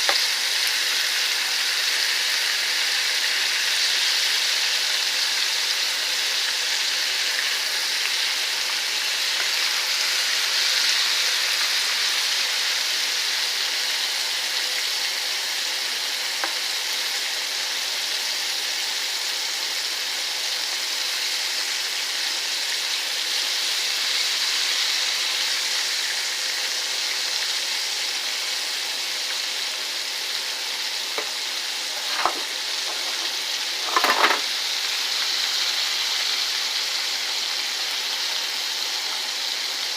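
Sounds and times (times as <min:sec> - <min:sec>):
ribs sizzling in hot oil: 0:00.0 - 0:39.9.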